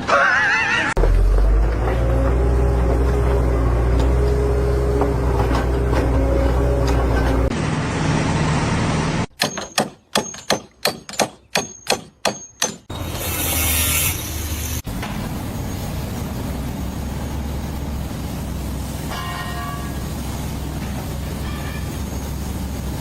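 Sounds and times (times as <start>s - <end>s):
heavy machinery rumble: 1.0s - 9.3s, 14.3s - 23.0s
rapid ringing metallic knocks: 9.4s - 12.9s
loud hissing: 12.9s - 23.0s.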